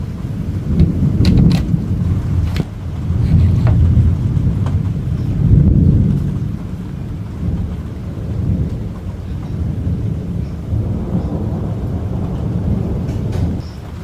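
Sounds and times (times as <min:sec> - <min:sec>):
thunder rumbling: 0:00.0 - 0:14.0.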